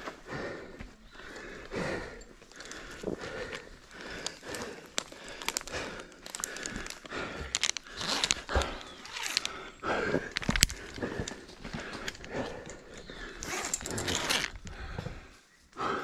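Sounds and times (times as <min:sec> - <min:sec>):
footsteps on muddy ground: 0:00.0 - 0:16.0
leaves and undergrowth rustling: 0:00.9 - 0:15.9.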